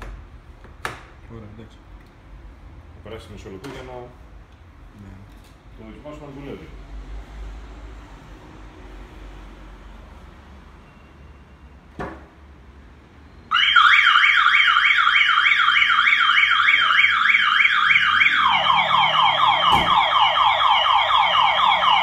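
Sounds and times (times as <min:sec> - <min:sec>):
car alarm siren whooping: 0:13.5 - 0:22.0.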